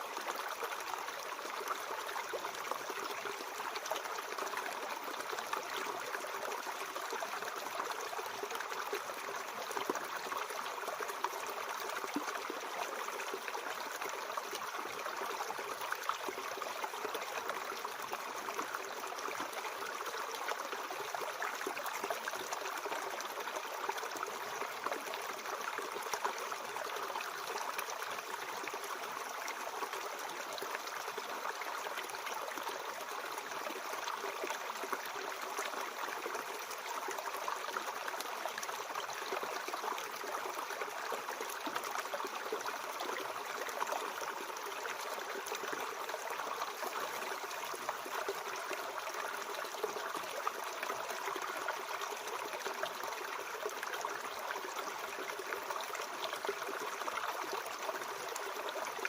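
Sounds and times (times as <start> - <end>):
stream flowing over rocks: 0.0 - 59.0.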